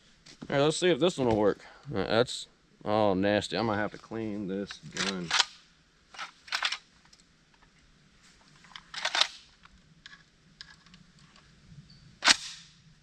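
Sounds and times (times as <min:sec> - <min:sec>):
metallic clatter of rifle action: 0:04.6 - 0:06.9, 0:08.6 - 0:11.4
sharp loud snap: 0:12.2 - 0:12.7.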